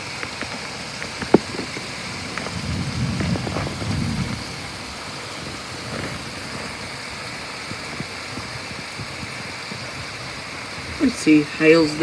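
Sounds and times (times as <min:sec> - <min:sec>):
steady rain: 0:00.0 - 0:12.0
thunder rumble: 0:01.1 - 0:09.0.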